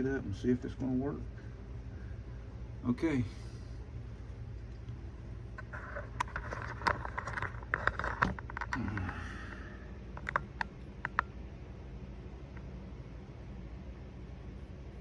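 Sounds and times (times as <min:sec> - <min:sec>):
steady low hum: 0:00.0 - 0:15.0
light scraping: 0:05.5 - 0:09.0
small sharp clicks and taps: 0:10.2 - 0:11.3.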